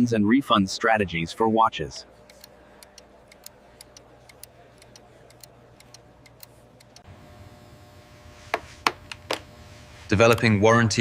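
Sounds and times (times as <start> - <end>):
faint low hum: 2.0 - 11.0
light clicks: 2.2 - 7.1.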